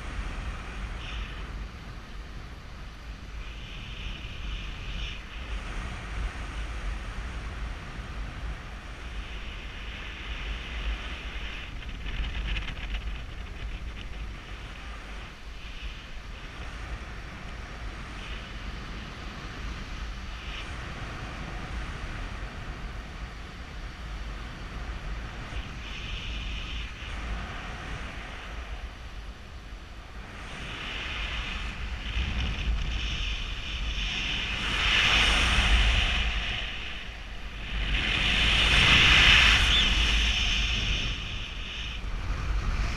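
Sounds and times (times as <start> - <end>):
wind rushing over microphone: 0.0 - 42.9.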